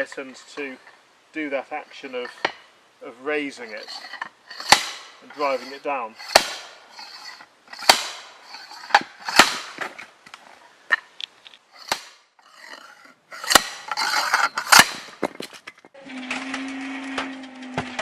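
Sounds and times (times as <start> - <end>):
log splitter striking log: 4.6 - 5.2, 6.2 - 6.8, 7.8 - 8.3, 8.9 - 10.0, 11.8 - 12.2, 13.4 - 13.9, 14.6 - 15.4.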